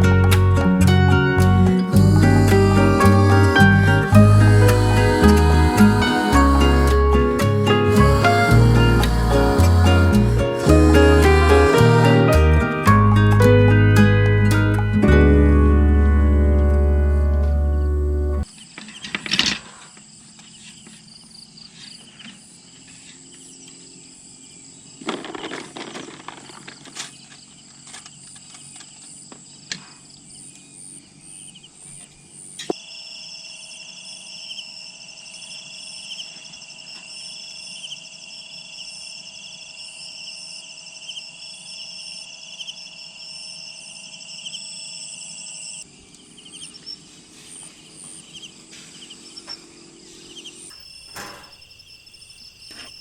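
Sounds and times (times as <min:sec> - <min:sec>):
insects chirping: 0:00.0 - 0:13.0, 0:17.0 - 0:53.0
rustle: 0:18.5 - 0:32.7, 0:46.0 - 0:53.0.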